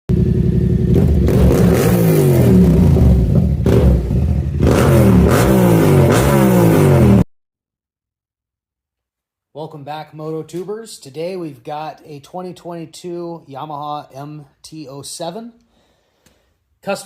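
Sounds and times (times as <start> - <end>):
motorcycle engine revving: 0.1 - 7.3.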